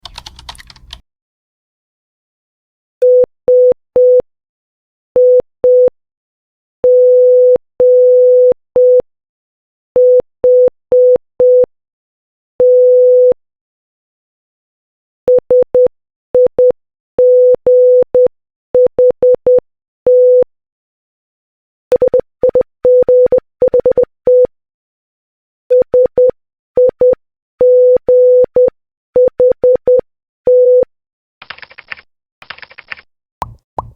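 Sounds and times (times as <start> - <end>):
morse code beeps: 21.9 - 24.5.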